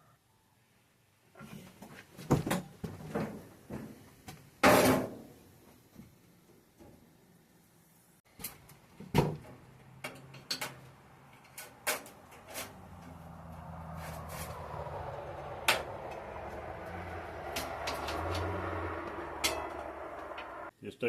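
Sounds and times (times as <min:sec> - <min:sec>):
steady hiss with low hum: 0:00.5 - 0:09.1.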